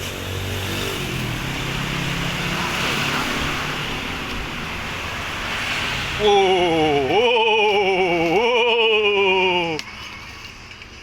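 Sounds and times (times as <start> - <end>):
person singing with vibrato: 6.2 - 9.8.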